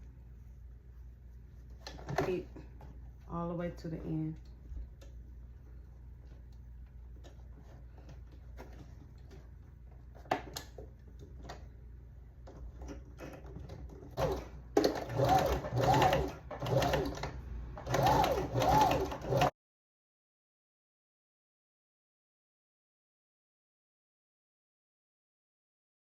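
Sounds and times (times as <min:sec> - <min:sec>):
sewing machine motor whine: 0:14.2 - 0:19.5.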